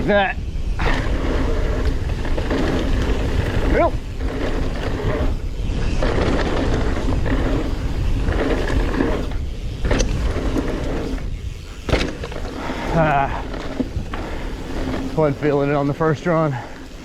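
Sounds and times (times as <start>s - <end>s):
bike rattling: 0.0s - 17.0s
bike tyres over dirt and rock: 0.0s - 17.0s
steady rush: 0.0s - 17.0s
wheels knocking on rocks: 0.8s - 15.6s.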